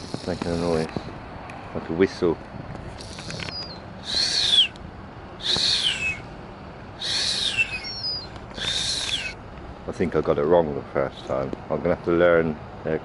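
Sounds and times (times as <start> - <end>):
herring gull whistled call: 3.3 - 4.8, 5.4 - 6.3, 7.0 - 9.4
faint high whistle: 3.4 - 4.7, 5.4 - 6.2, 7.0 - 9.3.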